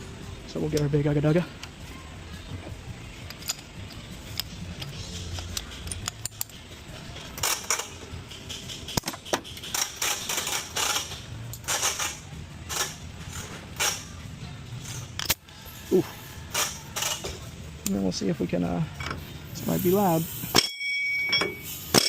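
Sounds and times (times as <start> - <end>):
metal tools clicking: 3.1 - 14.2, 14.8 - 18.0, 19.0 - 22.0.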